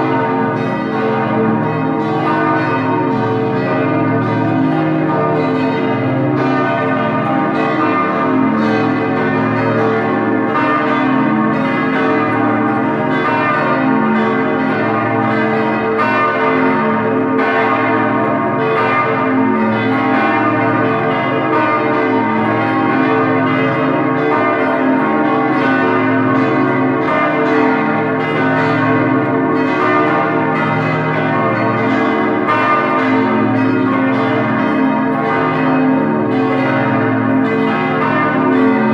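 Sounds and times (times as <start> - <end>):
church bells pealing: 0.0 - 38.9.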